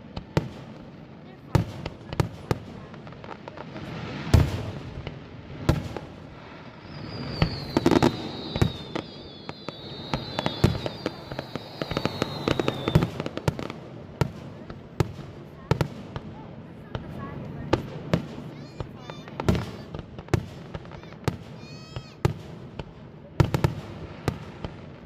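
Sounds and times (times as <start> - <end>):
fireworks bangs and crackles: 0.0 - 25.0
high wavering whistle: 6.7 - 13.2.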